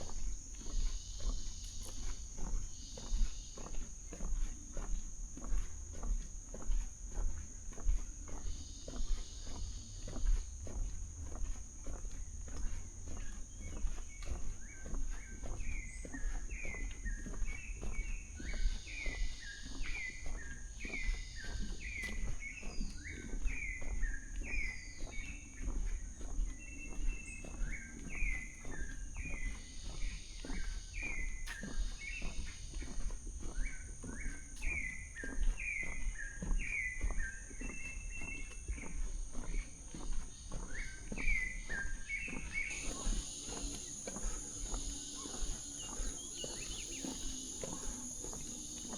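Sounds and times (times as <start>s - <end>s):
high insect drone: 0.0s - 48.9s
soft footsteps on forest floor: 0.0s - 48.9s.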